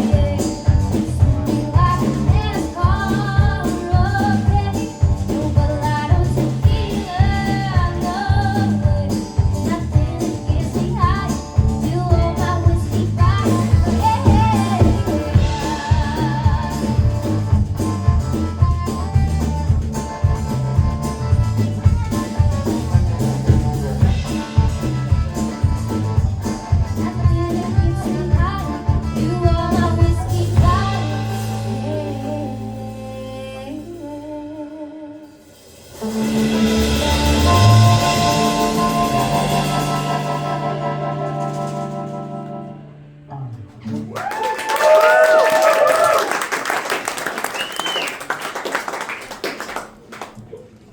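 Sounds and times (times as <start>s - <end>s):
country pop band playing: 0.0s - 34.8s, 35.8s - 48.2s.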